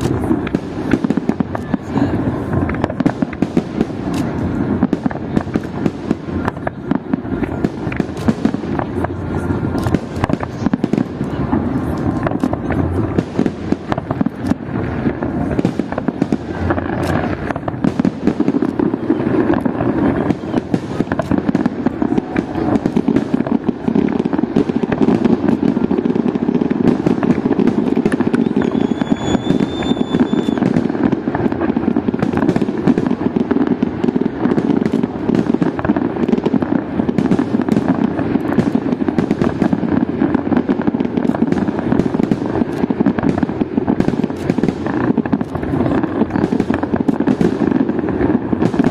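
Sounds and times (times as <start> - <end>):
heavy rumble: 0.0 - 28.4
fireworks bursts and bangs: 0.0 - 48.9
high whistle: 28.4 - 30.6.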